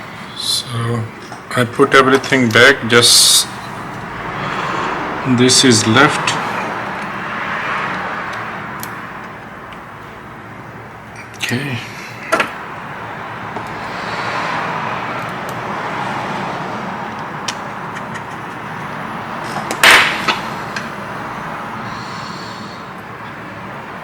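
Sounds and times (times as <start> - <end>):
steady background noise: 0.0 - 24.0
loud sharp clack: 19.6 - 20.9.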